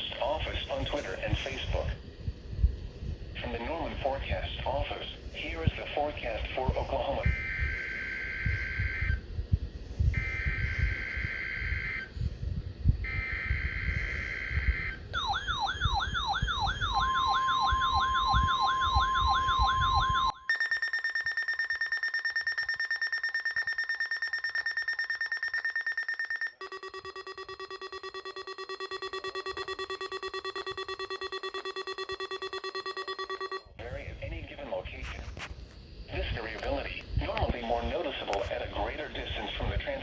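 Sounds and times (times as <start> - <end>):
steady high alarm tone: 7.0 - 9.3, 10.1 - 12.1, 13.0 - 33.8
fast-pulsing electronic alarm: 7.2 - 9.2, 10.2 - 12.1, 13.0 - 33.8
warbling siren-like alarm: 7.2 - 9.3, 10.0 - 12.2, 13.0 - 33.8
long repeating beep: 13.0 - 33.8.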